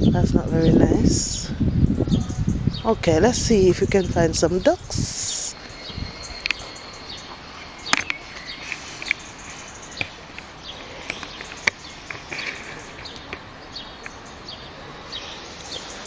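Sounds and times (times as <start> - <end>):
birds chirping: 0.0 - 16.0
outdoor background hiss: 0.0 - 16.0.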